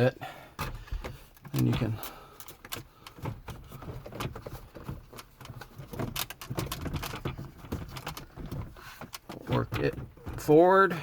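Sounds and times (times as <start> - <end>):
plastic trim clicks and knocks: 2.5 - 10.6.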